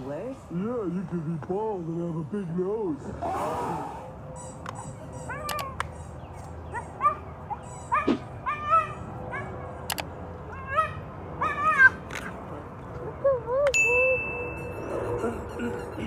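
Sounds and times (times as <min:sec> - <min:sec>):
dog yipping and barking: 0:04.4 - 0:09.8, 0:10.6 - 0:12.3, 0:14.1 - 0:16.0
sharp clicks: 0:09.9 - 0:10.1.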